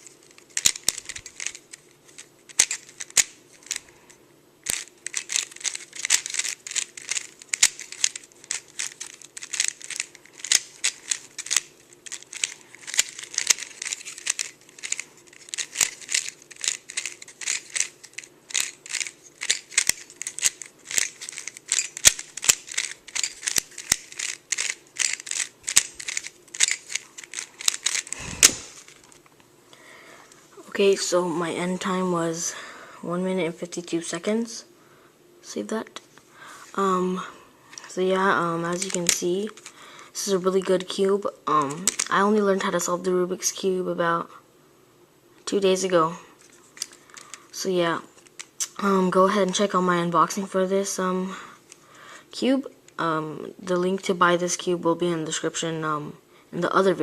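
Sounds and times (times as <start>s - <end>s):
speed cube plastic clicks: 0.2s - 3.9s, 4.6s - 29.0s, 38.7s - 39.8s, 41.6s - 42.2s.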